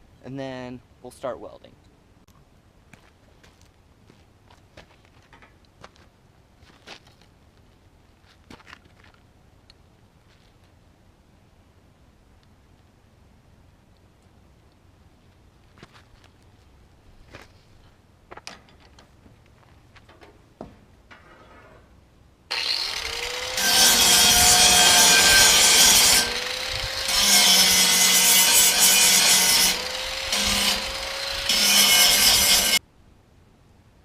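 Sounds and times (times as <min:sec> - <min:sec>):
power grinder grinding metal: 0:22.5 - 0:32.8.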